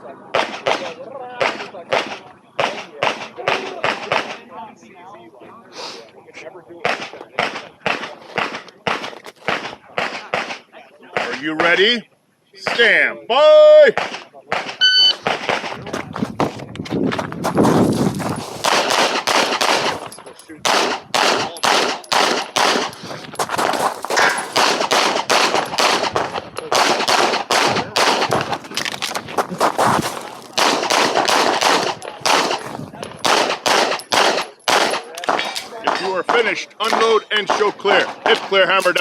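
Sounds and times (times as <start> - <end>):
handgun shots: 18.6 - 23.0, 24.1 - 28.5, 30.4 - 36.0.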